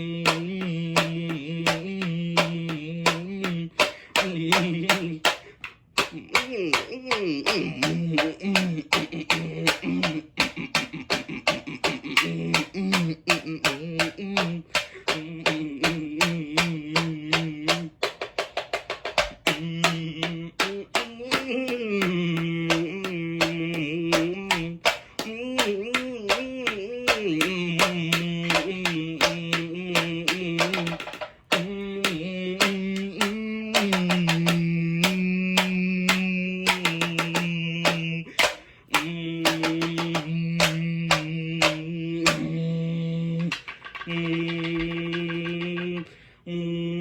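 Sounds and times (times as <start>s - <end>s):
low voice humming: 6.0s - 18.0s, 39.0s - 47.0s
quick uneven tapping clicks: 43.5s - 46.1s.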